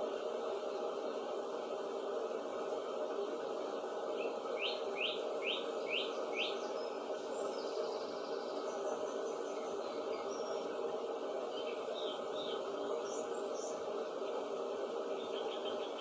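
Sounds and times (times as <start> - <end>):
steady background hum: 0.0 - 16.0
songbird calling: 4.2 - 8.8.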